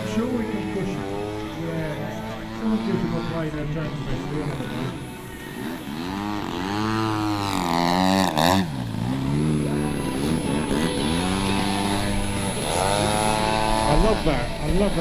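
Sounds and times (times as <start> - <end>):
model plane engine in flight: 0.0 - 15.0.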